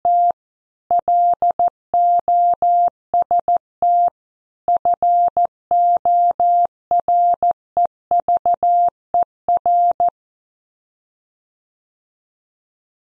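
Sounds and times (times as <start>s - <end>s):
morse code beeps: 0.1s - 4.1s, 4.7s - 10.1s.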